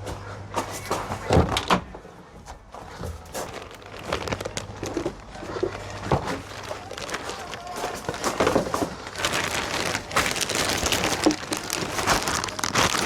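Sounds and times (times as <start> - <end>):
knocks and thuds of handling: 7.9 - 9.0.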